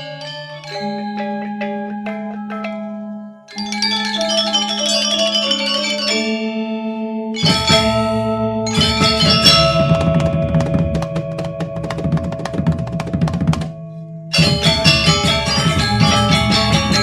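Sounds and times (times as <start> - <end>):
drums and percussion: 0.0 - 6.6, 7.4 - 17.0
music with held tones: 0.0 - 17.0.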